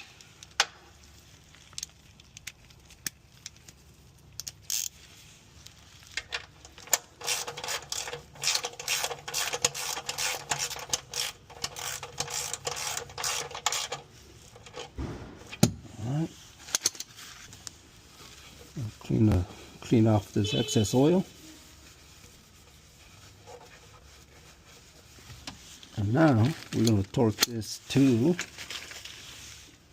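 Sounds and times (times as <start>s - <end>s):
metallic clicking of hand tools: 16.7s - 17.1s.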